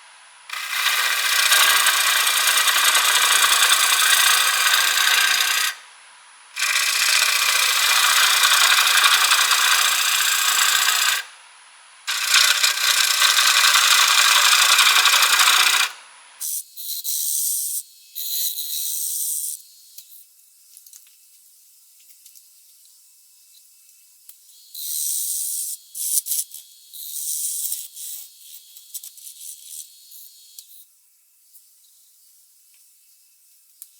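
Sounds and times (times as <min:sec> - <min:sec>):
lathe tool rasping wood: 0:00.5 - 0:05.8, 0:06.6 - 0:11.3, 0:12.1 - 0:16.0.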